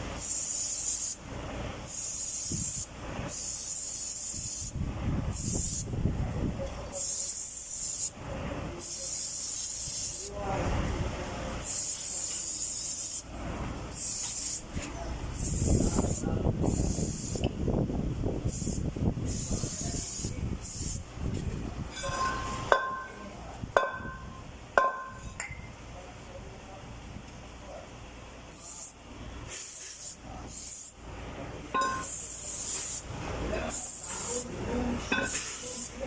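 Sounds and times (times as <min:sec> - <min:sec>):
spray hissing in short blasts: 0:00.2 - 0:01.2, 0:01.8 - 0:05.9, 0:06.9 - 0:08.1, 0:08.8 - 0:10.3, 0:13.9 - 0:14.7, 0:15.4 - 0:17.5, 0:18.5 - 0:21.0, 0:28.5 - 0:30.9, 0:32.0 - 0:33.1.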